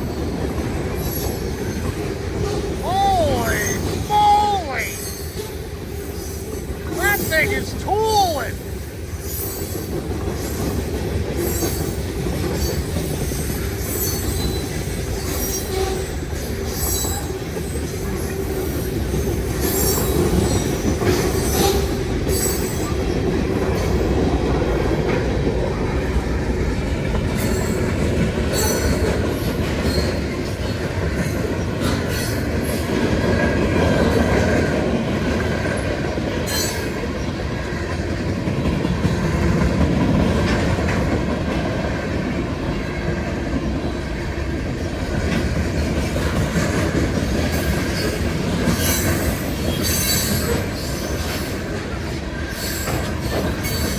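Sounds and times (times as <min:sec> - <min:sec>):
train wheel squeals: 0:11.4 - 0:18.1, 0:47.5 - 0:51.8, 0:52.4 - 0:53.9.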